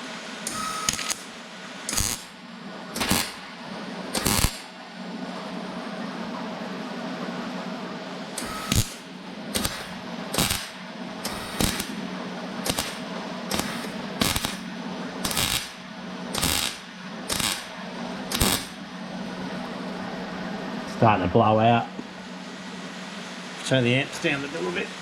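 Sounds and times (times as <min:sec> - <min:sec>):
steady hum: 0:00.0 - 0:25.0
arc welder crackling bursts: 0:00.4 - 0:02.4, 0:03.0 - 0:03.5, 0:04.1 - 0:04.7, 0:08.4 - 0:12.0, 0:12.6 - 0:18.9.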